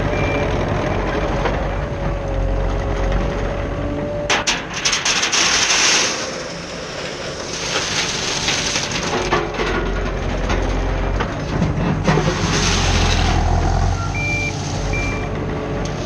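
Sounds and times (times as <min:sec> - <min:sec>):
heavy machine engine running: 0:00.0 - 0:16.0
gravel pouring and rattling: 0:04.7 - 0:10.4, 0:11.4 - 0:15.3.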